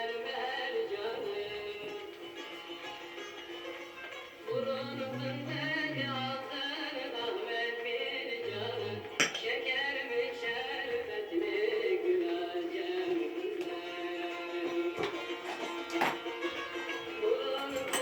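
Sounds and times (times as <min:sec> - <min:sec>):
folk music melody: 0:00.0 - 0:09.2, 0:10.4 - 0:18.0.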